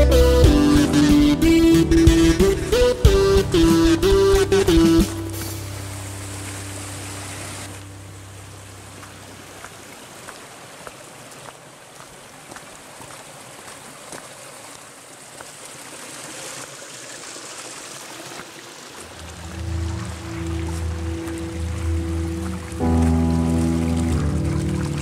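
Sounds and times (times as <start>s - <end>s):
low music notes: 0.0s - 9.0s, 19.1s - 25.0s
stream of water flowing: 0.0s - 25.0s.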